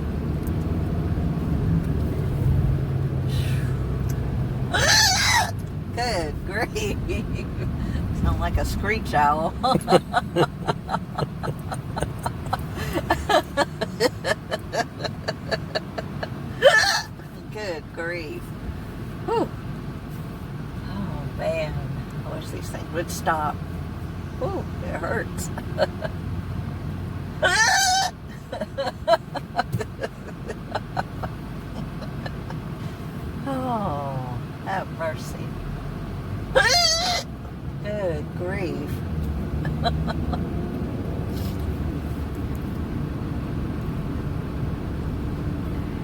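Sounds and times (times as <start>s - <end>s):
car cabin road rumble: 0.0s - 46.0s
woman hiccuping: 16.6s - 17.2s, 27.4s - 31.1s, 36.6s - 37.2s.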